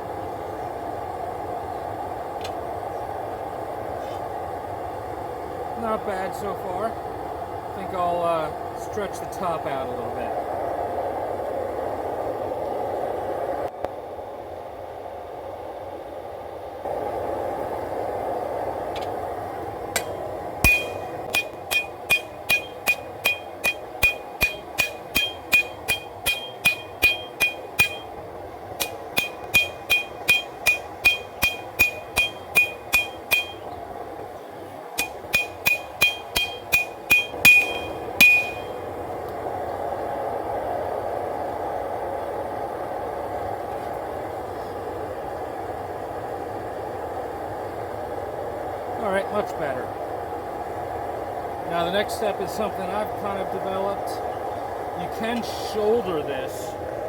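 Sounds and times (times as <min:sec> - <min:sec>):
forge burner roaring: 0:00.0 - 0:57.0
hammer striking steel on anvil: 0:19.9 - 0:28.2, 0:28.8 - 0:33.7, 0:35.0 - 0:38.8.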